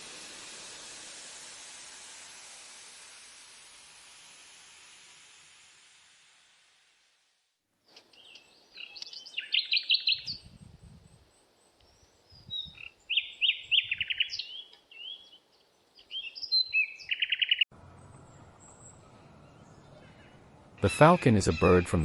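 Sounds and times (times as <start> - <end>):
bird singing: 8.1 - 22.0.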